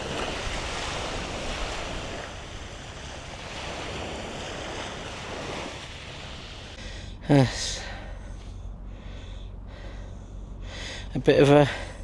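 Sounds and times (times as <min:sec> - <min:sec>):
sea waves washing up beach: 0:00.0 - 0:07.5.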